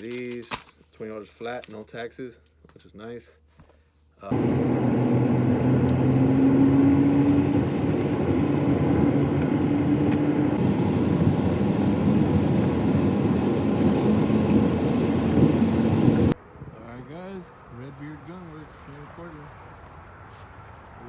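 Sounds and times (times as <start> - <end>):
car engine and tyre noise: 4.3 - 16.5, 17.8 - 21.0.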